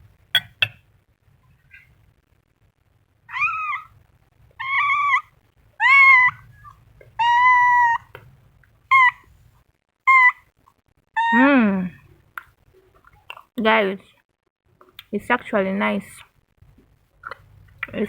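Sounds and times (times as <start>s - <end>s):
cat meowing: 3.3s - 4.0s, 4.6s - 8.1s.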